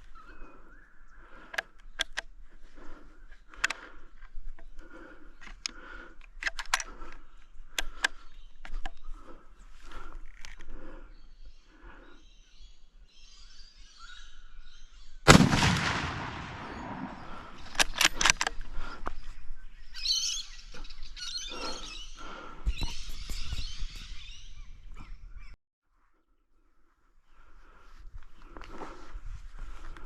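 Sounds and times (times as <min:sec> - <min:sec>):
birds calling: 0:00.0 - 0:25.6
sharp clicks: 0:01.3 - 0:09.1, 0:15.3 - 0:19.2
rifle shot echoing: 0:15.3 - 0:18.0.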